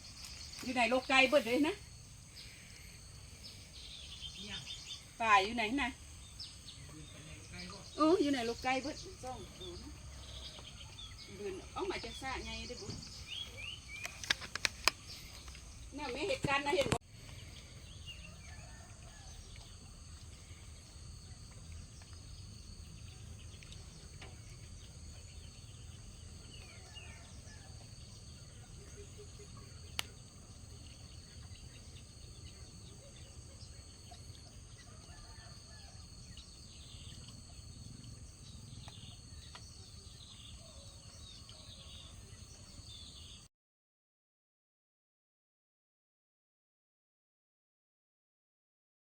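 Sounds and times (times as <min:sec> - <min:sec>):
bird chirps: 0:00.0 - 0:16.6
insects trilling: 0:00.0 - 0:43.5.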